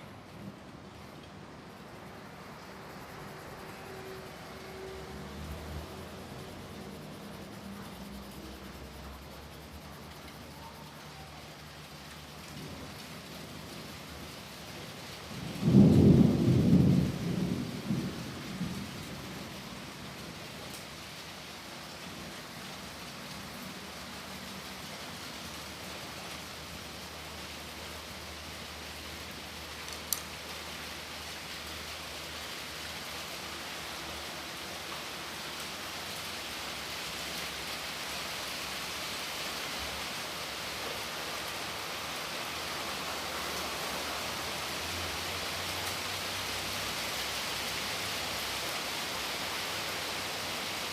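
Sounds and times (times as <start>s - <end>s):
steady rain hissing: 0.0s - 50.9s
thunder rumbling: 12.4s - 20.8s.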